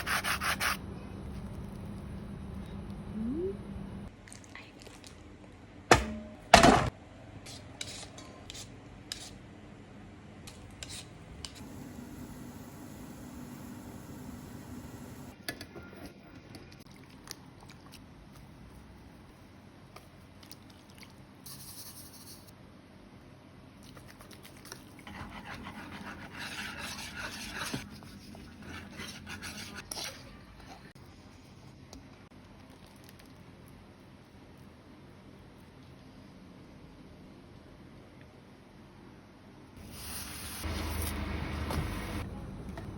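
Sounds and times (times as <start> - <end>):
food preparation scraping: 7.5 - 9.4, 25.0 - 30.9.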